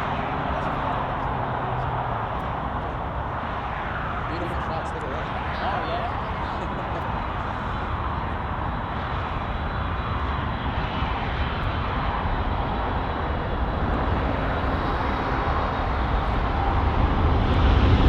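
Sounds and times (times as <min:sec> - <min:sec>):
jet airliner engines rumbling: 0:00.0 - 0:18.0.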